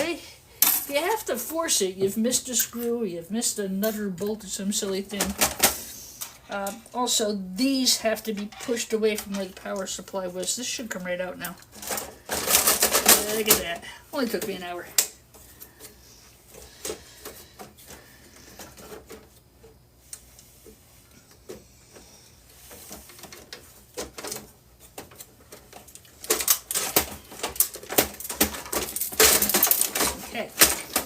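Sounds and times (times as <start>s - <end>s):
metal parts clicking and tapping: 23.1s - 31.0s.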